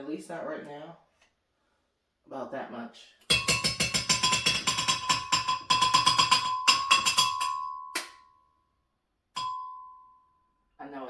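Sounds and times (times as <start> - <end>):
spoon striking container rim: 3.3 - 8.2.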